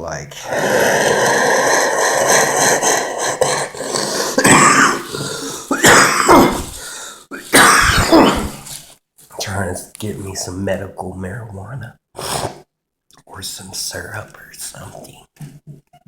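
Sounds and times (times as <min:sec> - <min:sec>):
man clearing throat: 0:02.4 - 0:08.7
man coughing: 0:02.6 - 0:08.7.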